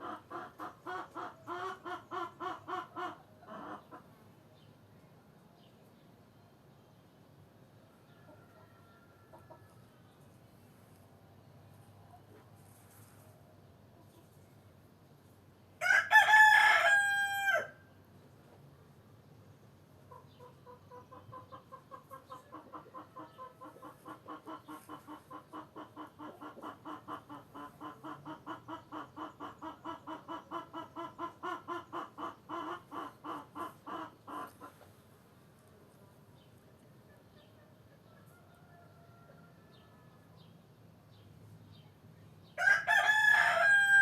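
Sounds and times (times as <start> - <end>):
chicken clucking rapidly: 0.0 - 4.2, 20.1 - 35.1
rooster crowing: 15.8 - 17.8, 42.6 - 44.0.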